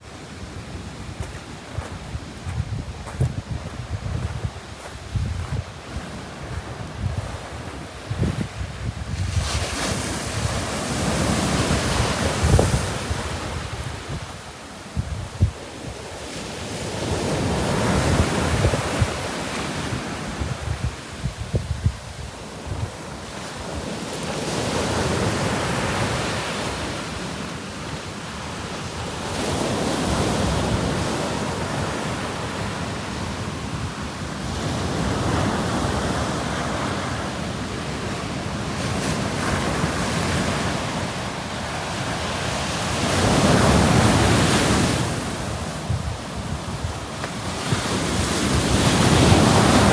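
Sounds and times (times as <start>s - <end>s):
wind buffeting microphone: 1.1s - 27.0s, 42.0s - 49.9s.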